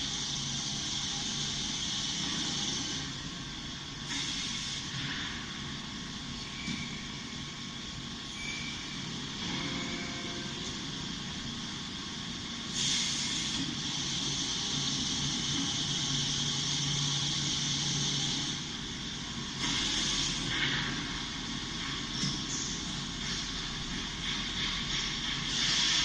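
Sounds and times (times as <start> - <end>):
welding machine hissing: 0.0 - 5.6, 11.0 - 26.0.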